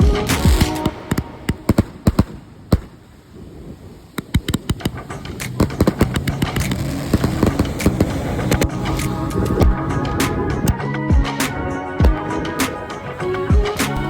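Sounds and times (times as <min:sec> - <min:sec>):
firecrackers popping: 0:00.0 - 0:10.8.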